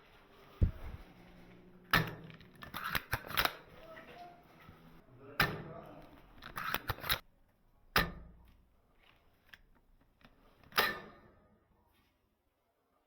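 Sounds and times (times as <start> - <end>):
rifle bolt clicks: 1.9 - 3.8, 6.4 - 7.2.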